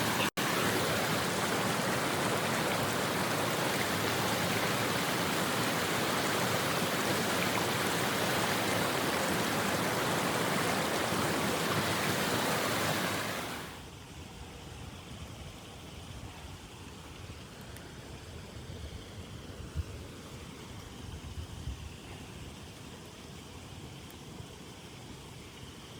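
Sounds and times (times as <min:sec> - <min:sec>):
steady loud rushing noise: 0:00.0 - 0:13.8.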